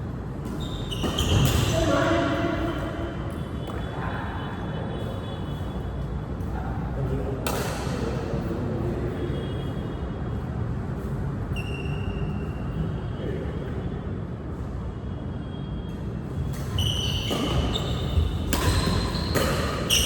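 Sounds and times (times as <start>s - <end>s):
brief high squeak: 0.5s - 2.3s, 11.5s - 12.6s, 16.6s - 20.0s.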